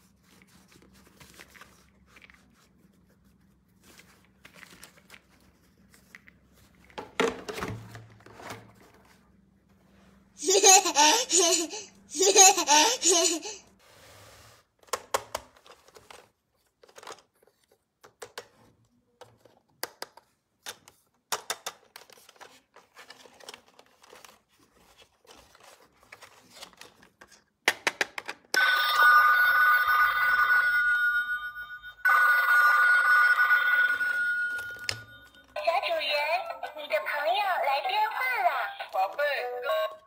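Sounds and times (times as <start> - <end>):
phone ringing two-tone: 28.6 - 35.9.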